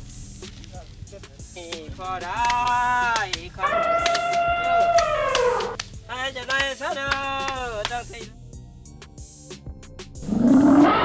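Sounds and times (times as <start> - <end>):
elephant trumpeting: 3.6 - 5.8, 10.2 - 11.0.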